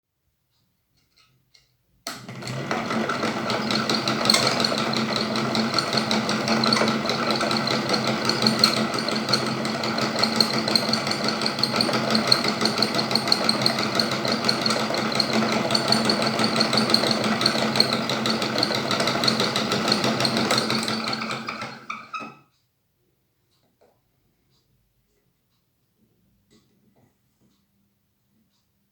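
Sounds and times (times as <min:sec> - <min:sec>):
small machine rattling and whining: 0:02.1 - 0:22.5.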